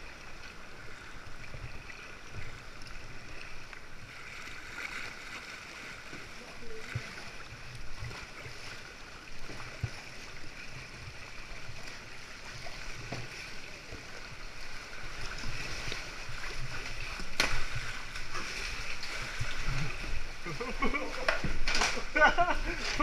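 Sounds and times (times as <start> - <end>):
water lapping around a kayak: 0.0 - 23.0
sharp splash: 15.3 - 20.1.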